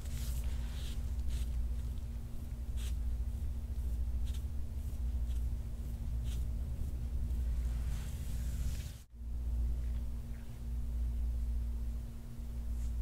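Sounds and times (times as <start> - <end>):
hands rubbing skin and clothing: 0.0 - 2.1, 2.7 - 9.1
steady low hum: 0.0 - 13.0.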